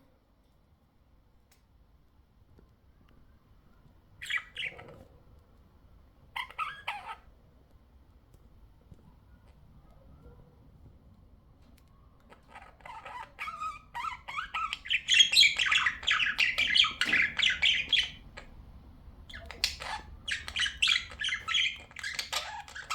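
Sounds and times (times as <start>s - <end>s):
budgerigar chattering and squawking: 4.2s - 5.0s, 6.4s - 7.3s, 12.3s - 18.6s, 19.3s - 22.9s.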